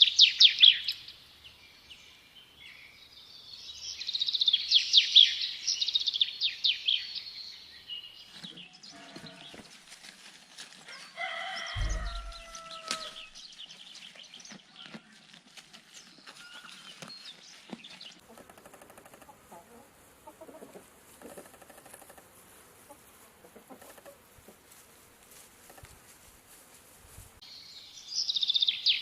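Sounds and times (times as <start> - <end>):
small birds twittering: 0.0 - 9.8, 11.3 - 15.2, 27.5 - 29.0
farmyard background noise: 0.0 - 29.0
rooster crowing: 10.9 - 13.4.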